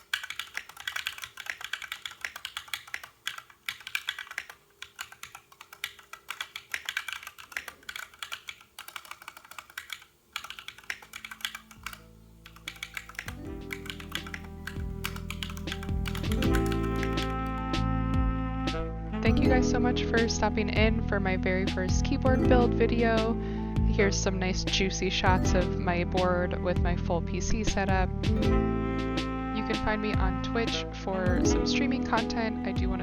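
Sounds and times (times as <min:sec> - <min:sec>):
mechanical keyboard typing: 0:00.0 - 0:17.5
background music: 0:10.5 - 0:33.0.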